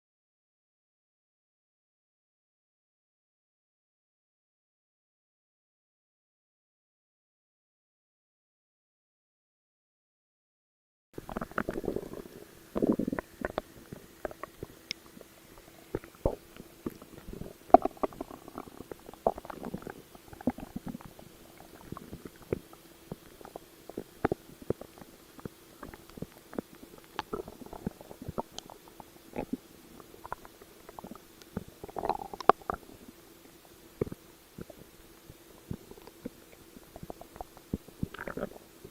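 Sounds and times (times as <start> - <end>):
stomach gurgling and growling: 11.2 - 38.9.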